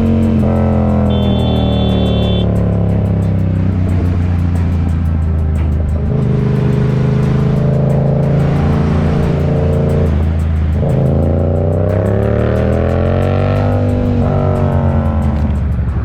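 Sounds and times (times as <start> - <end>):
motorcycle engine accelerating: 0.0 - 16.0.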